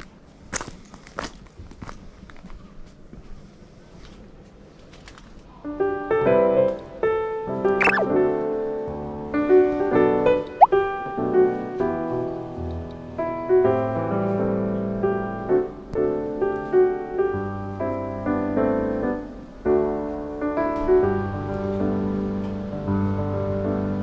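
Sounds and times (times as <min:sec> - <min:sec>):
short rising tone: 0:07.8 - 0:08.1.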